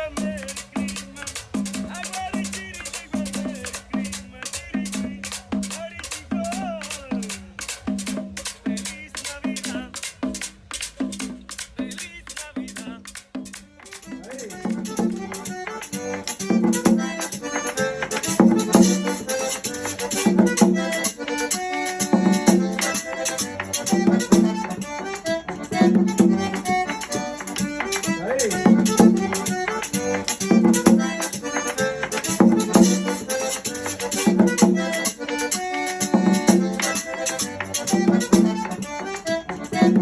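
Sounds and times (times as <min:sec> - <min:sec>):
accordion music: 0:13.5 - 0:40.0.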